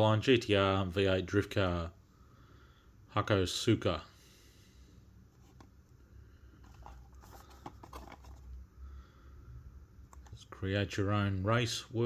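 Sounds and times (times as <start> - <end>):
low steady hum: 0.0 - 12.0
packaging clicks and taps: 6.6 - 8.5, 10.1 - 10.4.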